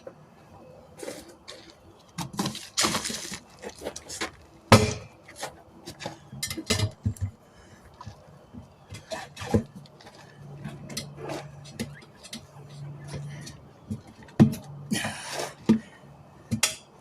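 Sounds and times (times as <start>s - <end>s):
metal tire tools clanking on rim: 1.1s - 7.3s, 8.8s - 17.0s.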